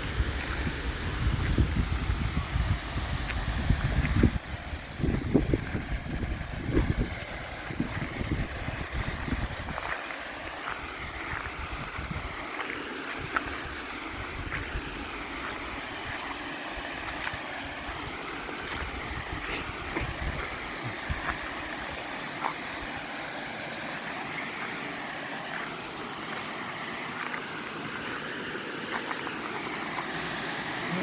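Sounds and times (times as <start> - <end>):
wind buffeting microphone: 0.0 - 10.0, 11.0 - 12.4, 18.7 - 21.4
waterfall rushing: 0.0 - 31.0.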